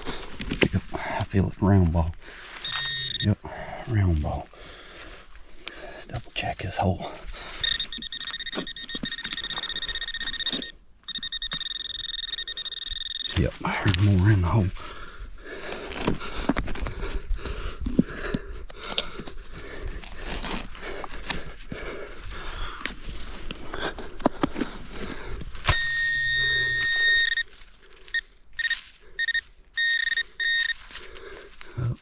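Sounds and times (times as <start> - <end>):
digging and scraping in soil: 0.0 - 32.0
metal detector pinpointer beeping: 2.6 - 3.4, 7.5 - 14.3, 25.7 - 27.5, 28.1 - 30.8.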